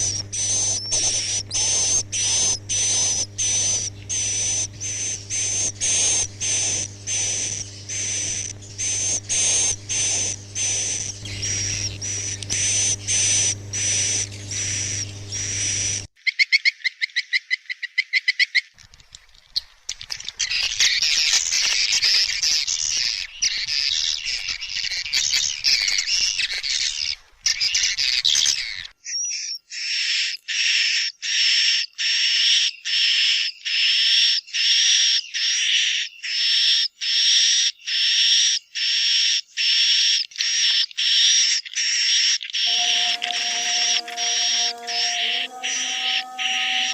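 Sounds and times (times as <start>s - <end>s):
swiftlet calls: 0.0s - 16.1s, 42.7s - 46.9s.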